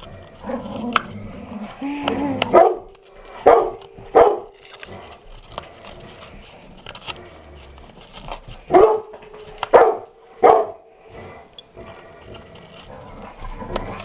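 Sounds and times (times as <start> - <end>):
dog-like barks: 2.4 - 4.5, 8.7 - 10.8.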